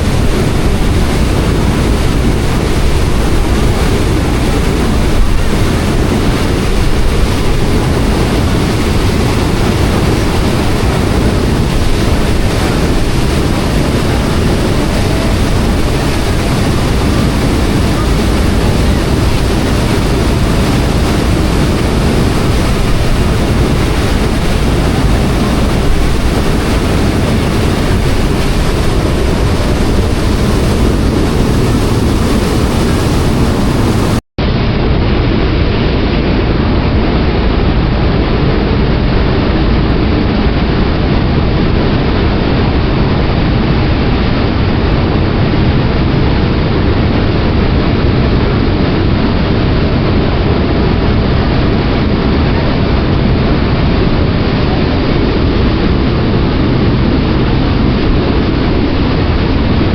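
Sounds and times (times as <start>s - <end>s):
ferry engine: 0.0s - 38.5s
water noise: 0.0s - 59.9s
wind rushing on microphone: 0.0s - 59.9s.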